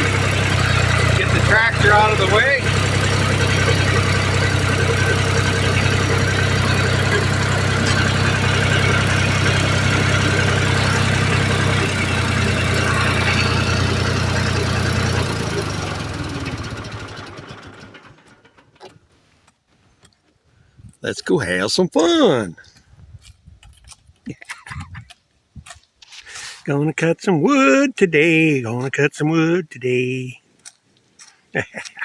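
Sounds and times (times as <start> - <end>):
tractor engine running: 0.0 - 19.1.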